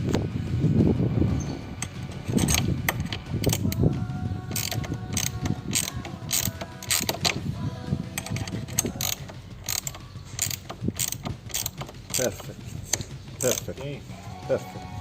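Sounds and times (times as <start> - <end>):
ratchet clicking: 1.8 - 3.9, 4.5 - 7.4, 8.1 - 14.0.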